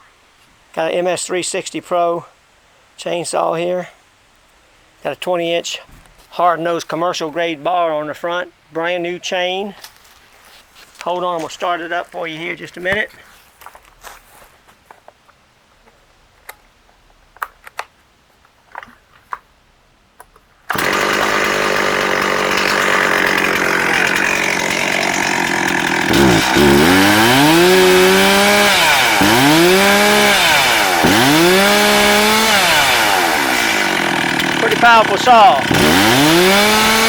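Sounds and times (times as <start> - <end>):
chainsaw running and revving: 20.7 - 37.0.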